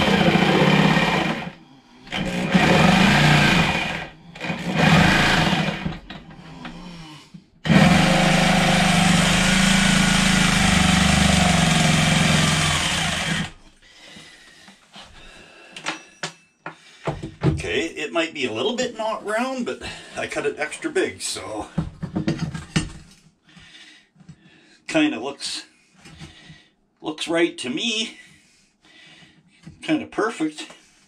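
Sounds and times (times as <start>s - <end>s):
jigsaw cutting: 0.0s - 6.2s, 7.6s - 13.6s.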